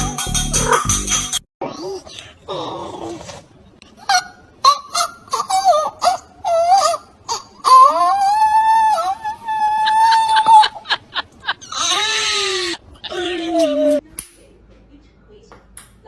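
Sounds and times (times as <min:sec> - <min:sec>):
animal wailing: 0:05.4 - 0:10.8, 0:11.6 - 0:14.0.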